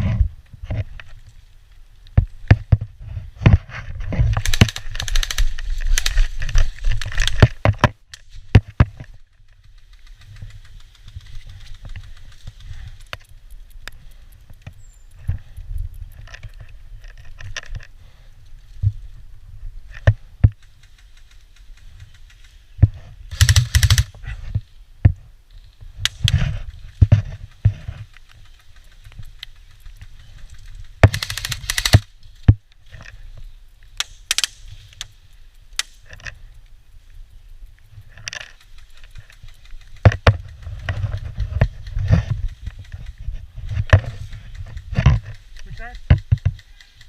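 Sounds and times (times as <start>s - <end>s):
wind rumble on microphone: 0.0s - 33.8s, 34.6s - 47.0s
rapid automatic fire bursts: 4.4s - 6.4s, 23.3s - 24.1s, 28.4s - 32.1s.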